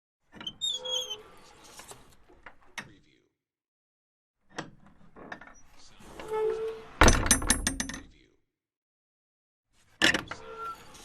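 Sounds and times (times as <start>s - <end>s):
wooden door creaking: 0.3s - 1.4s, 4.5s - 8.1s
door banging shut: 7.0s - 8.0s.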